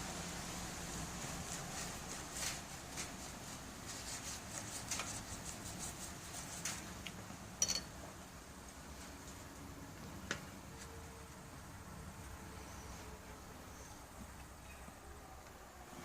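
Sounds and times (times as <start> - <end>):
paintbrush brushing and dabbing: 1.0 - 7.0.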